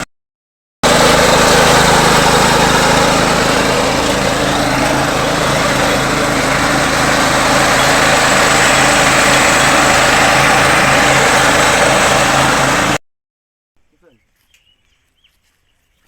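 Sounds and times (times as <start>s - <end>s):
small engine running steadily: 0.8s - 13.0s.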